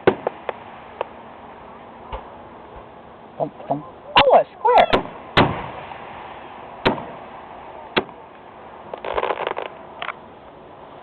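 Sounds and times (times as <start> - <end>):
firework crackling pops: 0.0 - 1.2, 4.8 - 10.3
firework bangs: 0.0 - 3.0, 4.7 - 10.2.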